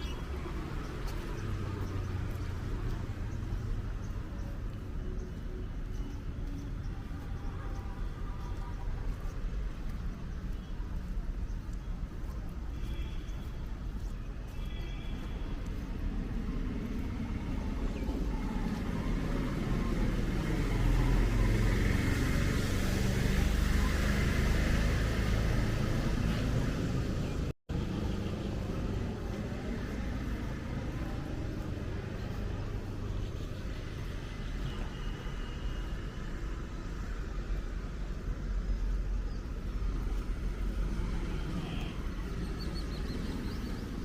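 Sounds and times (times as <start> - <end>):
traffic rumble: 0.0 - 44.0
car passing by: 15.8 - 44.0.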